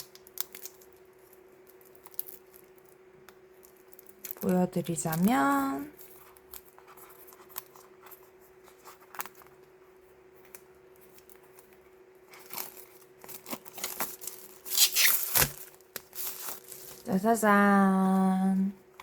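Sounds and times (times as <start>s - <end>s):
packaging tearing and crinkling: 0.0s - 3.0s, 12.3s - 17.1s.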